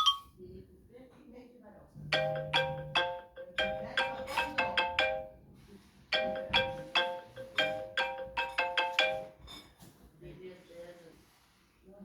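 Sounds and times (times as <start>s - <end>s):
phone timer alert melody: 0.0s - 0.3s, 2.2s - 5.3s, 6.2s - 9.3s.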